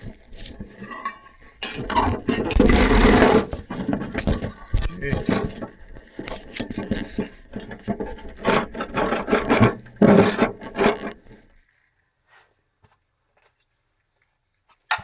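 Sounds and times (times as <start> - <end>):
scraping and scrubbing grime: 0.0 - 11.5.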